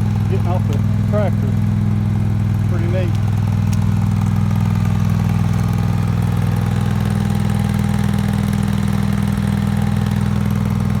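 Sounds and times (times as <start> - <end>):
garden tractor engine running: 0.0 - 11.0.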